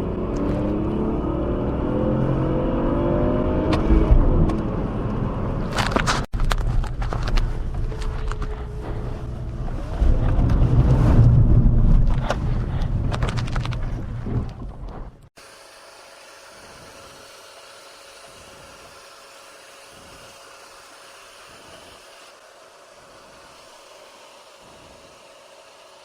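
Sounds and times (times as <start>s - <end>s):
car engine accelerating hard: 0.0s - 6.1s
wind noise: 3.6s - 15.3s.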